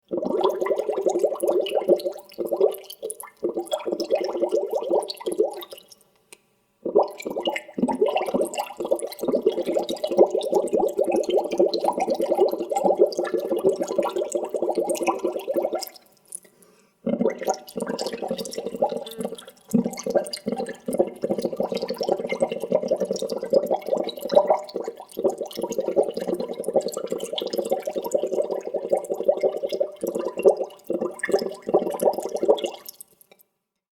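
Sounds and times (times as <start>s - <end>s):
bubbles gurgling through water: 6.9s - 15.9s, 17.1s - 32.9s.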